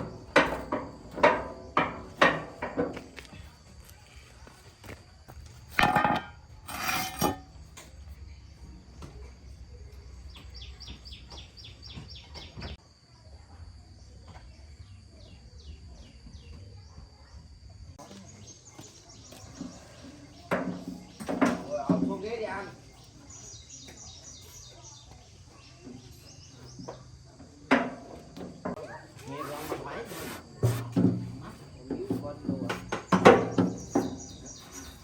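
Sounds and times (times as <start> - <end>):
birds chirping: 31.6 - 35.0.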